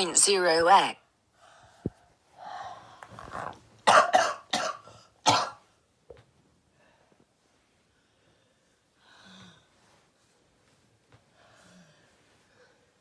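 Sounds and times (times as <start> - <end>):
person coughing: 3.9 - 5.6.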